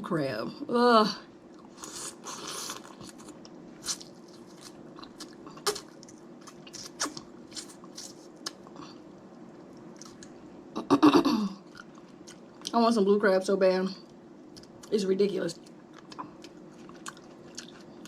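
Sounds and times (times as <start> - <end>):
soft crunching and chewing: 1.4 - 10.5, 11.6 - 12.8, 14.0 - 18.0.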